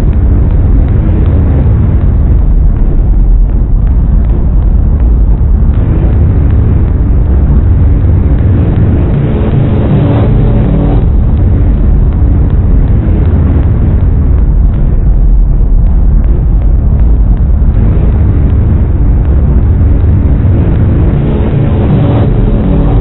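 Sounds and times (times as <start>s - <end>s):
flanged saw drone with chords: 0.0s - 23.0s.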